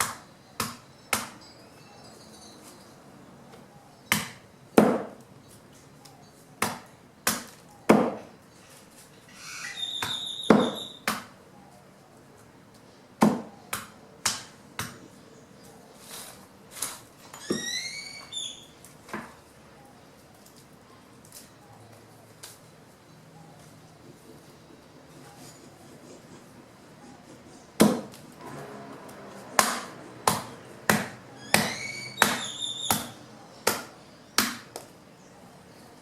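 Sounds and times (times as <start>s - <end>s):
branches chopped by hand: 4.1s - 5.3s, 6.6s - 8.3s, 13.2s - 15.0s, 27.8s - 34.9s
bird calling: 9.3s - 11.8s, 17.3s - 18.8s, 23.1s - 28.5s, 29.3s - 34.4s.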